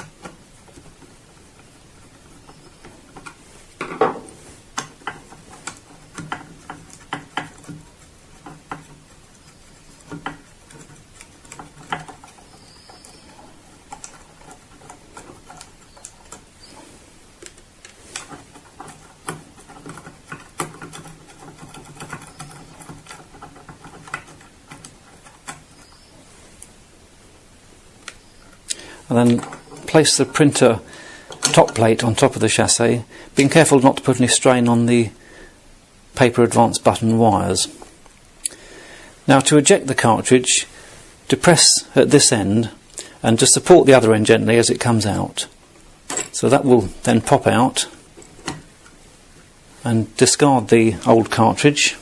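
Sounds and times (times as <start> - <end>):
clicks and scrapes of small parts: 0.0 - 26.7, 28.0 - 30.6.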